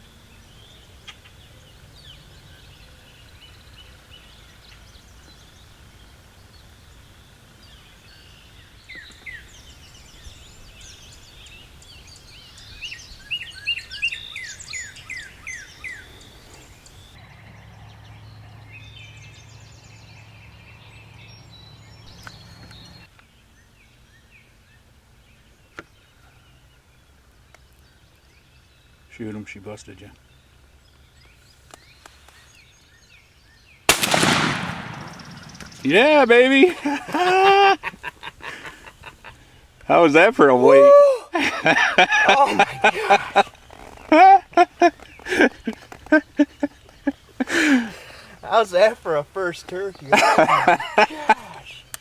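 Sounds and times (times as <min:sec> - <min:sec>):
faint bird calls: 0:00.0 - 0:18.1, 0:34.1 - 0:52.0.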